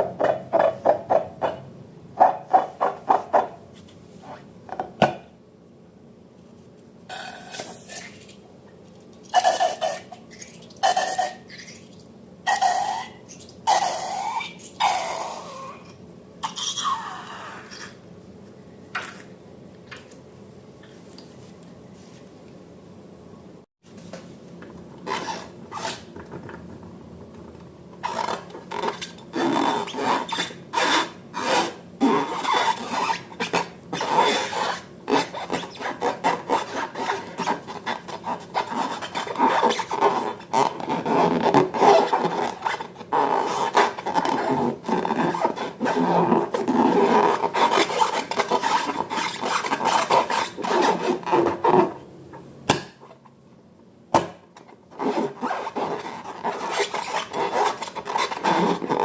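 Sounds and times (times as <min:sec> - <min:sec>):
slime rubbing and scraping: 0:28.0 - 0:52.0, 0:55.0 - 0:59.0.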